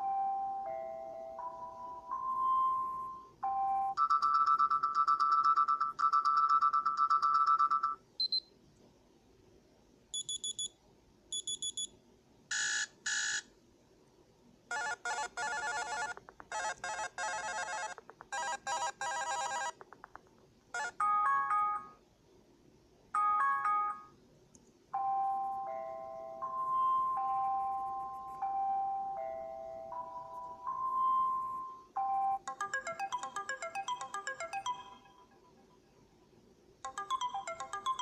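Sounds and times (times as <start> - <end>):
chimes: 0.0 - 4.0, 25.0 - 35.8.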